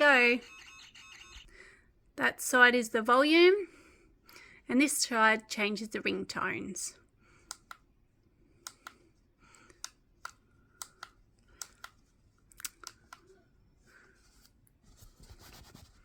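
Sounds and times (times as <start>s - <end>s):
soft rustle: 13.7s - 16.0s.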